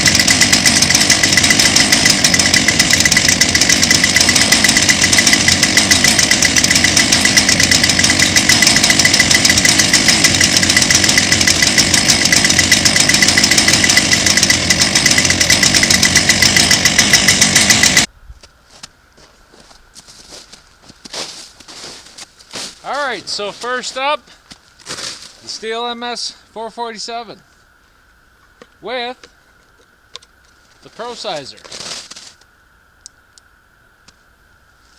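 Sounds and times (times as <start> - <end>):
chainsaw running at high speed: 0.0 - 18.1, 22.8 - 24.2, 31.0 - 31.6.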